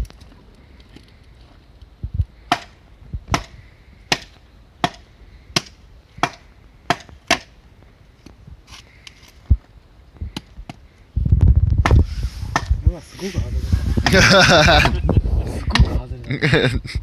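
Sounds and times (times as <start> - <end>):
firewood being chopped: 2.3 - 7.6, 10.3 - 10.8, 11.7 - 12.9.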